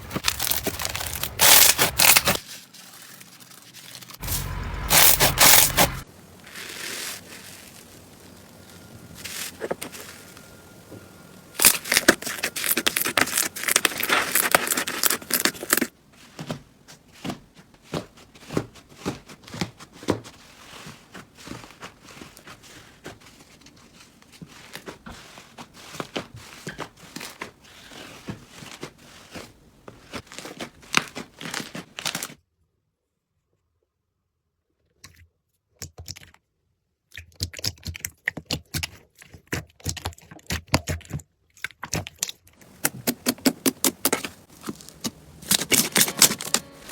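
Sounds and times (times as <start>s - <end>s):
slime crackling and popping: 11.6s - 15.9s.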